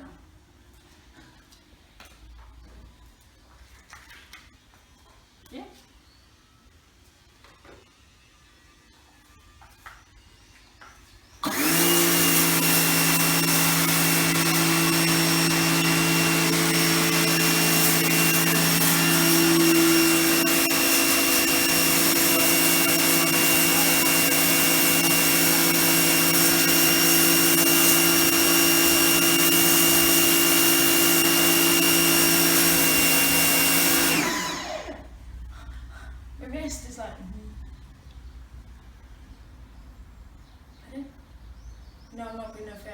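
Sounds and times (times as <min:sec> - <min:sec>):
pressure washer running: 0:11.4 - 0:35.2.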